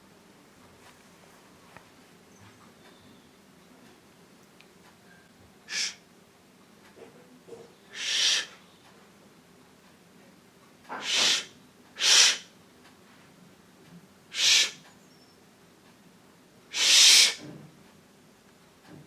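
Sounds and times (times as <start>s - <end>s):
person hissing breath: 5.7s - 6.0s, 7.9s - 8.6s, 11.0s - 12.5s, 14.3s - 14.8s, 16.7s - 17.4s.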